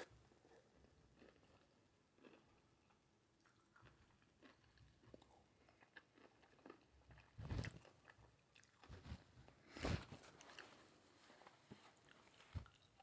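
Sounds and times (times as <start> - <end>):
person chewing food: 0.0 - 9.1.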